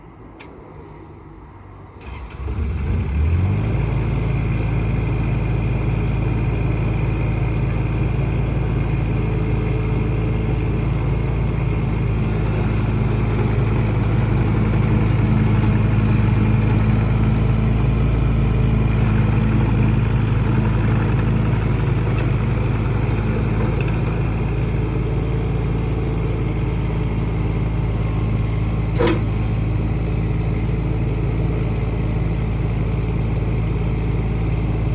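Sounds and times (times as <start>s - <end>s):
diesel engine starting and running: 0.2s - 34.9s.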